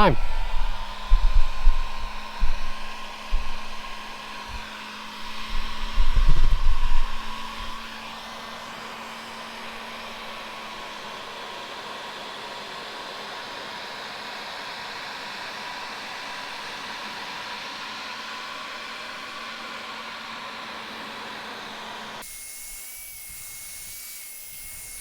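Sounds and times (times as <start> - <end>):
low thumps: 0.0 - 4.6
heat gun blowing: 0.0 - 25.0.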